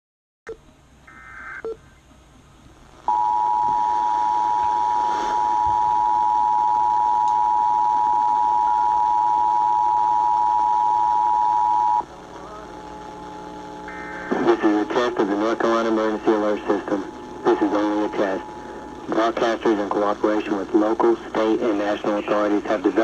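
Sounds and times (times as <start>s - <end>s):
two-tone attention signal: 3.1s - 12.0s.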